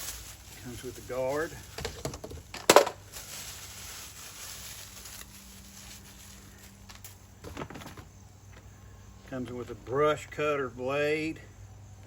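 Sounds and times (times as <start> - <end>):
faint rustling: 0.0 - 8.9.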